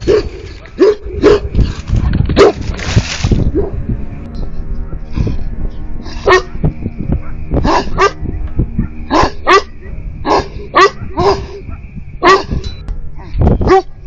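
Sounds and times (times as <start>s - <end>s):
dog barking deeply: 0.0s - 1.6s, 2.3s - 2.7s, 6.0s - 12.6s, 13.2s - 14.0s
steady low hum: 0.0s - 14.0s.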